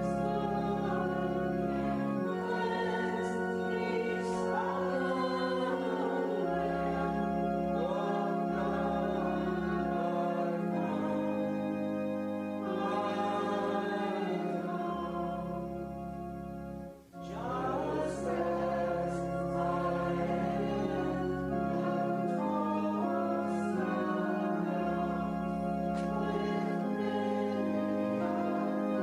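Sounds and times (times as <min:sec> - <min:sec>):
congregation singing a hymn: 0:00.0 - 0:29.0
long held accompaniment chords: 0:00.0 - 0:29.0.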